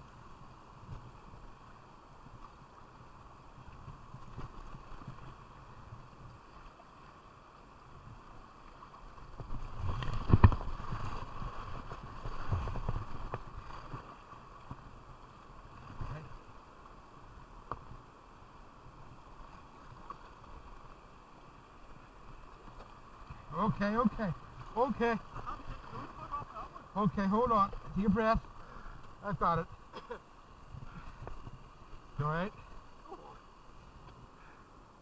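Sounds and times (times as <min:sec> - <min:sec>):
rushing water: 0:00.0 - 0:35.0
kayak knocks: 0:09.4 - 0:14.8.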